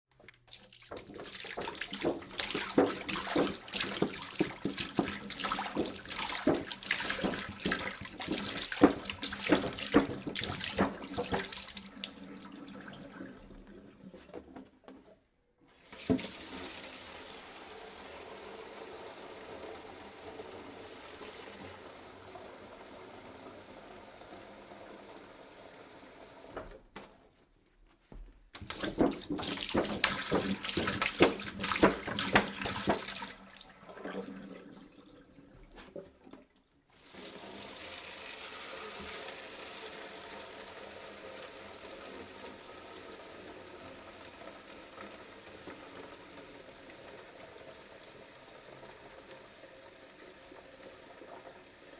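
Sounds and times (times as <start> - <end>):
water pouring from a jug: 0.2 - 14.5, 28.6 - 41.2.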